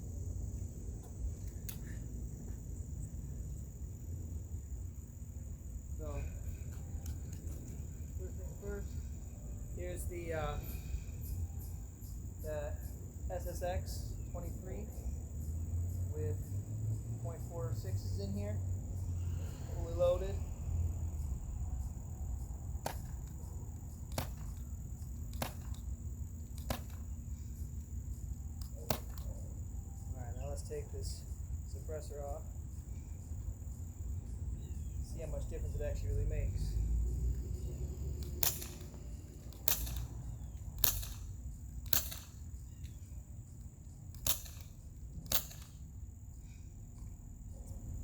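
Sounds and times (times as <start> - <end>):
suppressed airsoft pistol shots: 24.1 - 24.6, 25.3 - 25.8, 28.6 - 29.3, 38.2 - 40.2, 40.8 - 42.4, 44.1 - 45.8.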